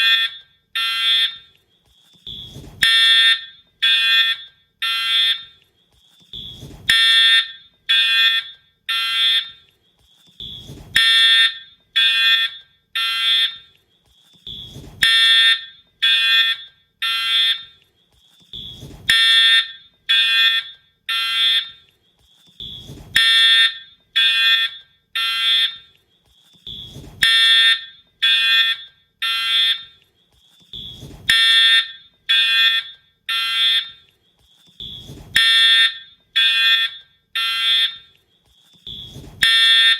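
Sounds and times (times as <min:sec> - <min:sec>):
fire alarm horn blasts: 0:00.0 - 0:01.6, 0:02.2 - 0:05.6, 0:06.3 - 0:09.7, 0:10.4 - 0:13.8, 0:14.4 - 0:17.8, 0:18.5 - 0:21.9, 0:22.6 - 0:26.0, 0:26.6 - 0:30.0, 0:30.7 - 0:34.1, 0:34.8 - 0:38.2, 0:38.8 - 0:39.9.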